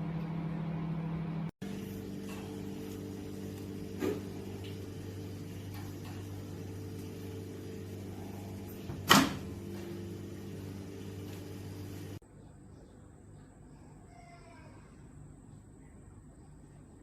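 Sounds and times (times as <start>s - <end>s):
microwave oven humming: 0.0s - 13.0s
louder clunk: 8.9s - 9.5s.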